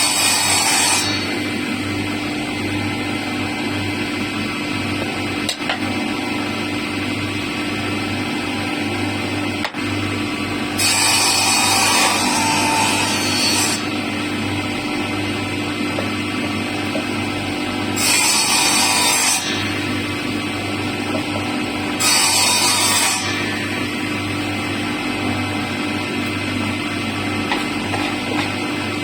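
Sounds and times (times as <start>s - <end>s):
power tools cutting wood: 0.0s - 1.3s, 10.7s - 14.1s, 17.8s - 19.9s, 21.9s - 23.8s.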